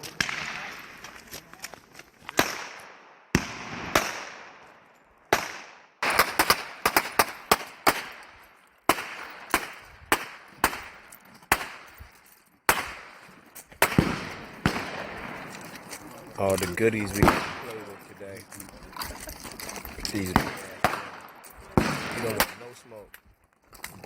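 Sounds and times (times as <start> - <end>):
gunshots with echo: 2.4 - 12.1, 12.7 - 18.2, 20.2 - 22.8.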